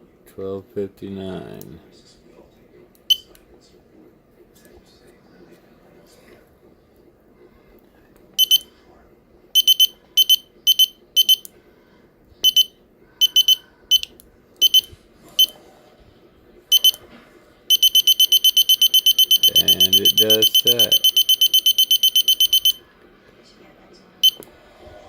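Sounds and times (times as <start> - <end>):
fast beeping alarm: 8.4 - 8.6, 9.6 - 11.5, 12.4 - 15.5, 16.7 - 17.0, 17.7 - 22.8, 24.2 - 24.4
high buzzer beeps: 8.4 - 8.6, 9.6 - 11.5, 12.4 - 15.5, 16.7 - 17.0, 17.7 - 22.8, 24.2 - 24.4.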